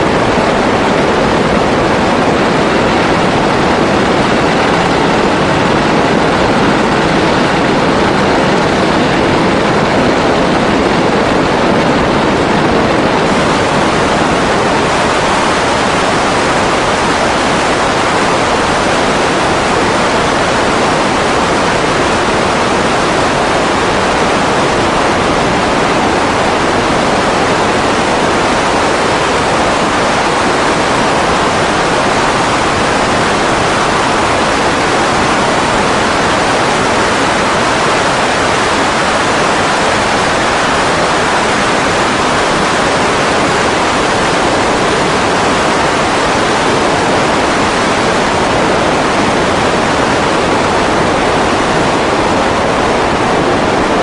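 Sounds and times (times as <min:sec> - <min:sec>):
seaplane engine rushing noise: 0:00.0 - 0:54.0.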